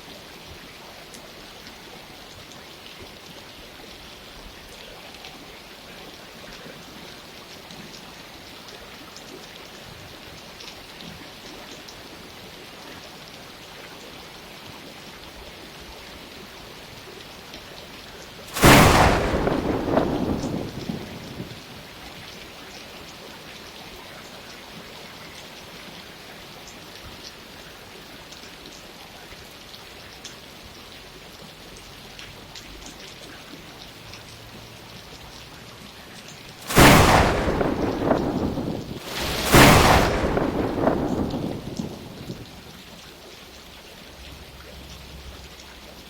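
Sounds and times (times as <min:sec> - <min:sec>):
steady rain falling: 0:00.0 - 0:46.0
loud thunderclap rumbling: 0:18.5 - 0:21.9, 0:36.6 - 0:42.8.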